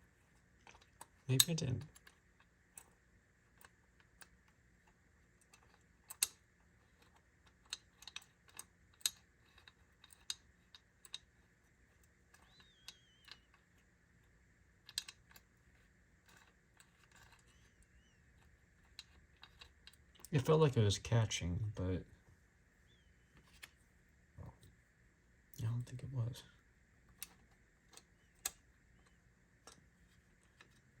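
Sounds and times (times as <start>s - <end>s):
metal switch parts clicking: 0.7s - 2.1s, 5.4s - 6.4s, 14.8s - 15.4s.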